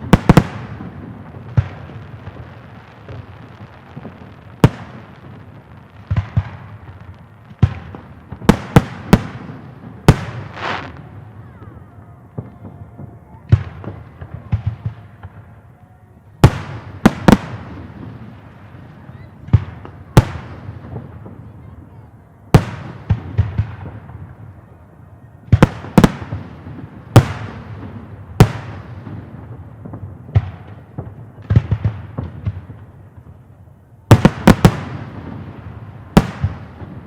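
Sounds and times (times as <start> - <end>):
crackling hiss: 0.0 - 37.0
fireworks shells bursting: 10.2 - 11.1.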